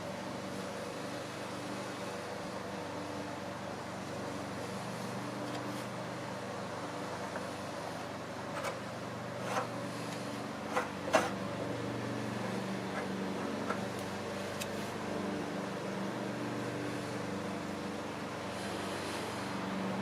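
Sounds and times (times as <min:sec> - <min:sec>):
low mechanical hum: 0:00.0 - 0:20.0
light clicks and scrapes: 0:08.5 - 0:08.8, 0:09.4 - 0:11.4.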